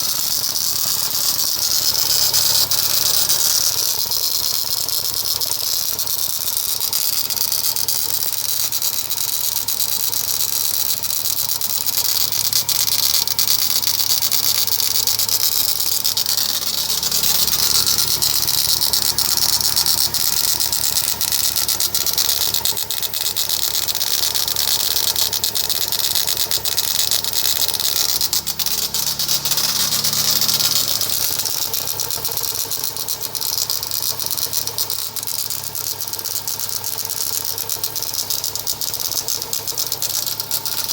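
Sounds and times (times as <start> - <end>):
car engine idling: 0.0 - 40.9
fast rattle from engine pulley: 0.0 - 40.9.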